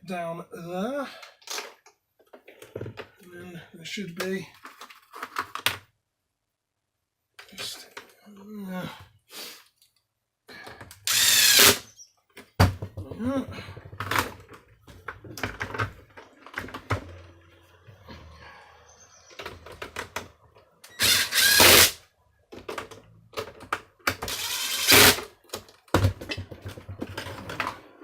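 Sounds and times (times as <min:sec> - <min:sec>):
plastic parts clicking and knocking: 0:01.2 - 0:03.3, 0:04.5 - 0:06.0, 0:09.8 - 0:17.5, 0:19.3 - 0:28.0
rasping bursts: 0:11.1 - 0:11.8, 0:21.0 - 0:22.0, 0:24.3 - 0:25.2.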